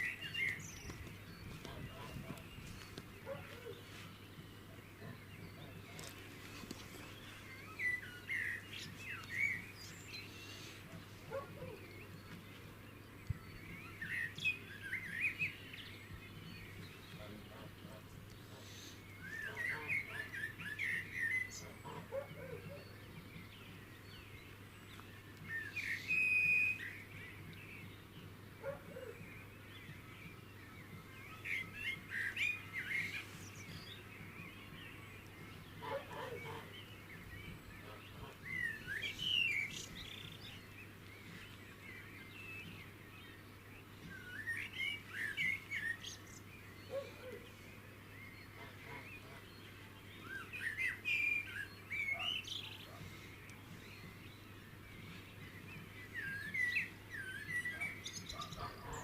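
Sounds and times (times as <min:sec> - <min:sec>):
low bird calls: 0:28.0 - 0:59.0.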